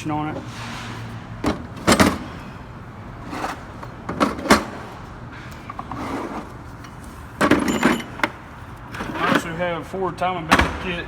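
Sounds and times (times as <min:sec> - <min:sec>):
metal toolbox clunks: 0:01.4 - 0:02.4, 0:07.4 - 0:08.4.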